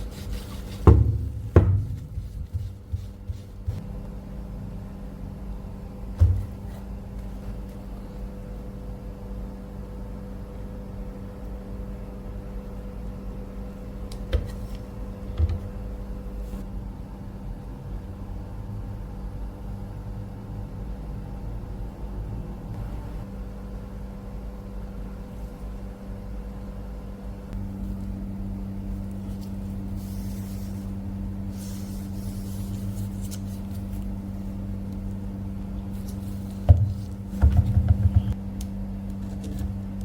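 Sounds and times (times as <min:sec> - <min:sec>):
sharp knocks: 0:36.7 - 0:38.4.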